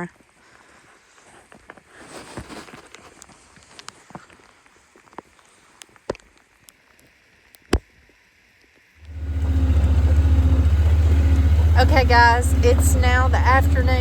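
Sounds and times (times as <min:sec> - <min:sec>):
faint clicks and soft crunches: 0:00.2 - 0:08.8
vehicle engine running with low hum: 0:09.0 - 0:14.0.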